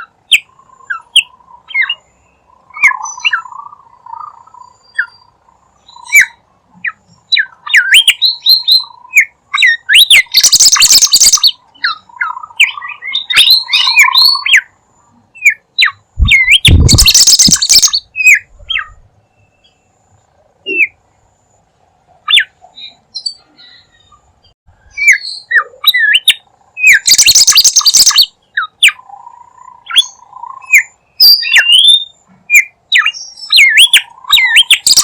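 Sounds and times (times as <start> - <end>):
bird whistled chirps: 2.7 - 14.7, 15.4 - 19.8, 24.8 - 35.0.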